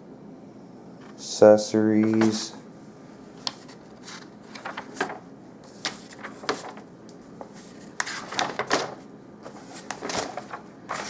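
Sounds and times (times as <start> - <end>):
papers rustling: 2.0 - 2.6, 3.4 - 11.0.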